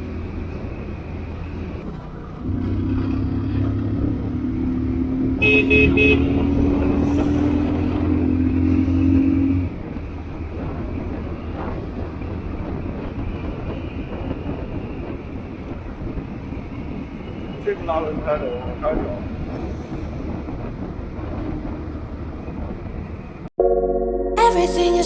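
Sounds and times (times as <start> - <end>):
engine drone: 0.0 - 14.4
horn toots: 5.3 - 9.7.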